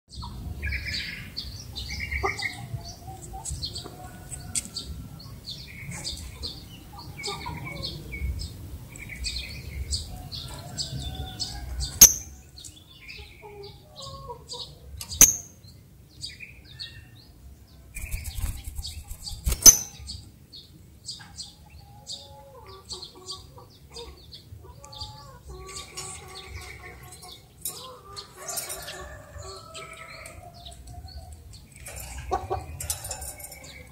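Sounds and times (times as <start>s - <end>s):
lovebird chattering: 12.0s - 12.4s, 15.2s - 15.6s, 18.0s - 20.1s.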